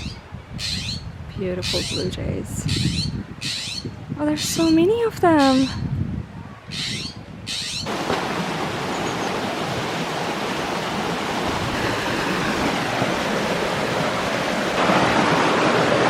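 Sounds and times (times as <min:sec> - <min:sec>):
waterfall rushing: 0:07.9 - 0:16.0.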